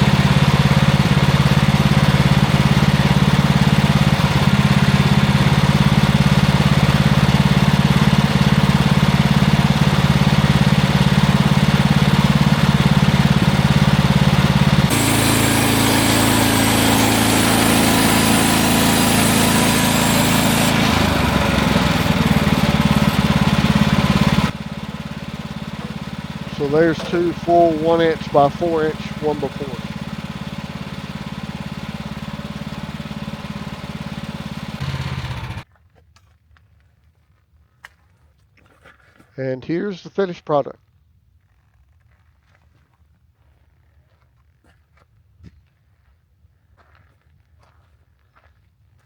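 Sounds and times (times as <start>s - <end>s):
sawmill engine running: 0.0s - 35.6s.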